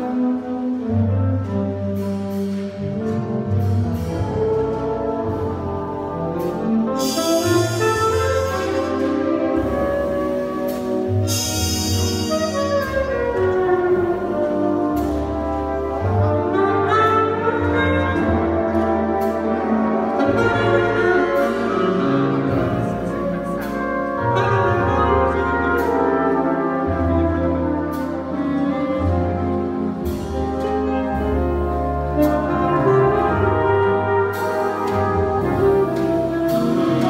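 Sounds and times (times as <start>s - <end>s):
jazz big band playing: 0.0s - 37.0s.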